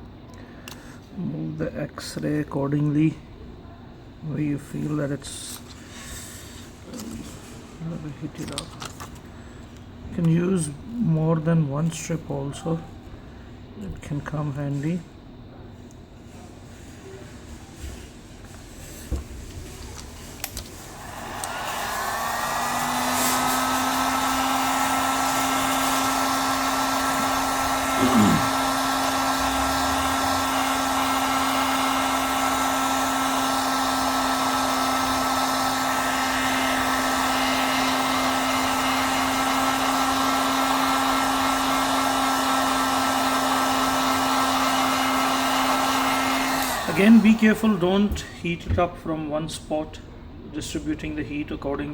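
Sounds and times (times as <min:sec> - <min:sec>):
hot-air blower humming: 0:16.3 - 0:48.9.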